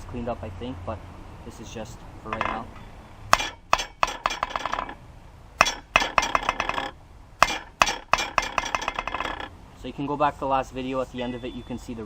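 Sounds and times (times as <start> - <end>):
steel bouncing on anvil ringing: 2.3 - 5.0, 5.6 - 9.5.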